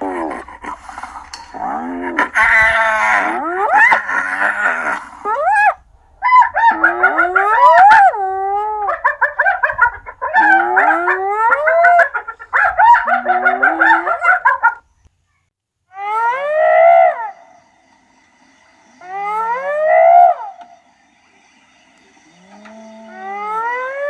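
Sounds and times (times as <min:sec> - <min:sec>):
hyenas whooping: 0:00.0 - 0:14.8, 0:15.9 - 0:17.6, 0:19.0 - 0:20.9, 0:22.2 - 0:24.0
hyenas giggling: 0:06.3 - 0:14.8.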